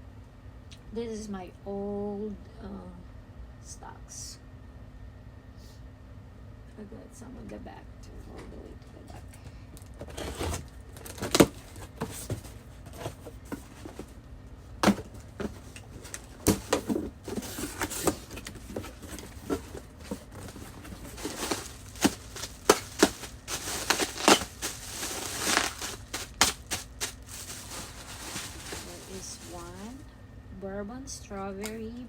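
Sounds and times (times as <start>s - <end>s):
cardboard packaging rustling: 9.9s - 14.2s, 14.8s - 30.0s.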